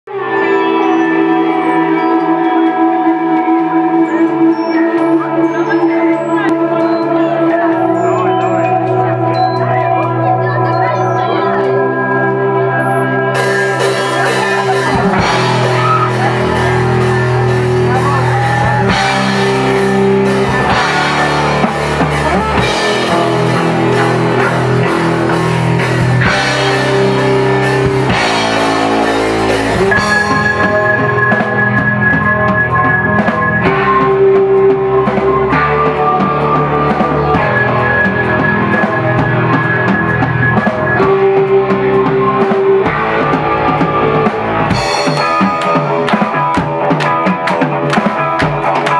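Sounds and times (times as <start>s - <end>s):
rock band playing live: 0.1s - 48.9s.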